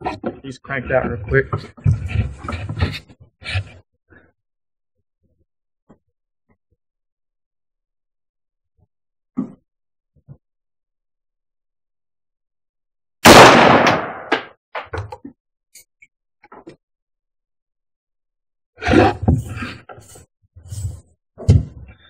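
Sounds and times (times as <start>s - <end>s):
loud gunshot: 13.2s - 14.5s.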